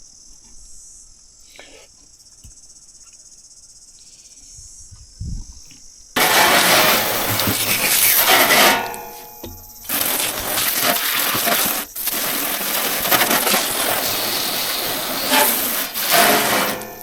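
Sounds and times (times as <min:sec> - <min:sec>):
insects chirping: 0:00.0 - 0:17.0
loud rough crunching: 0:06.2 - 0:17.0.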